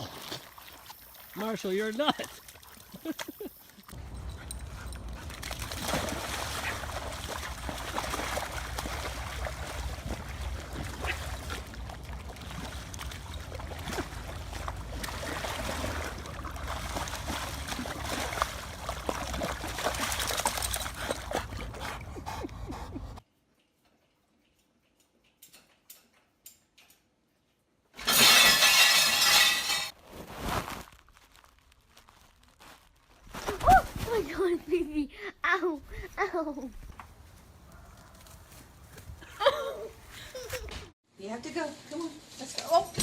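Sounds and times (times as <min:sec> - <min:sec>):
water splashing and trickling: 0:00.0 - 0:23.2.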